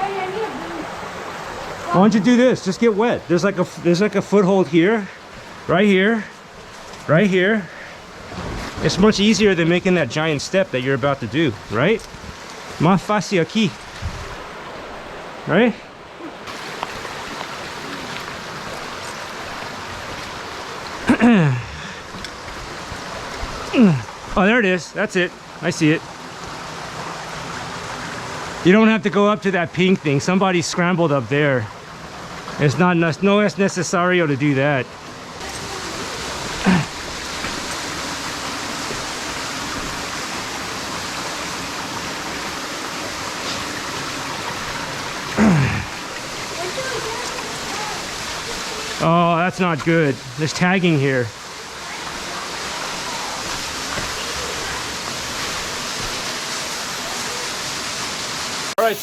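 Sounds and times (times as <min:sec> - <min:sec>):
creek water over rocks: 0:00.0 - 0:59.0
person exclaiming: 0:23.7 - 0:24.0.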